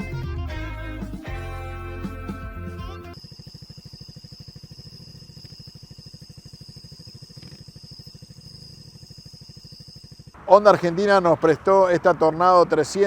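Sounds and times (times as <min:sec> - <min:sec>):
motorcycle engine idling: 0:01.0 - 0:13.0
high-pitched whine: 0:01.6 - 0:11.7.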